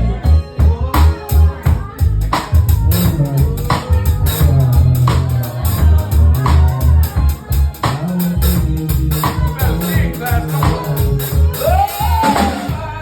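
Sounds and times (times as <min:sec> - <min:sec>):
bass guitar: 0:00.0 - 0:13.0
drum kit beat: 0:00.0 - 0:13.0.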